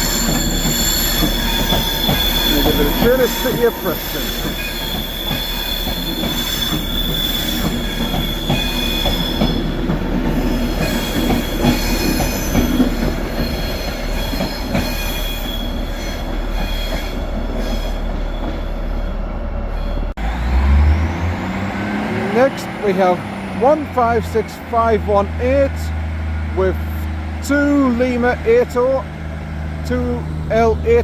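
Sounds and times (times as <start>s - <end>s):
train wheels clicking over track: 0.0s - 18.6s
train wheels squealing: 0.0s - 20.1s.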